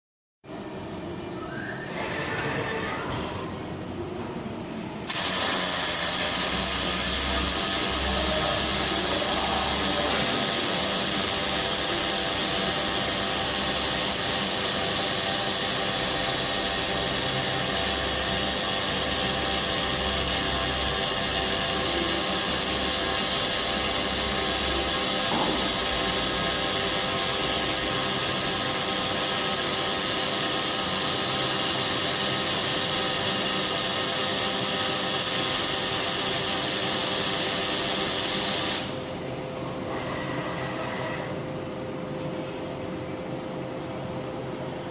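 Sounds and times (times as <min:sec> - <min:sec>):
machine hum: 0:00.5 - 0:44.9
welding arc hiss: 0:05.0 - 0:39.4.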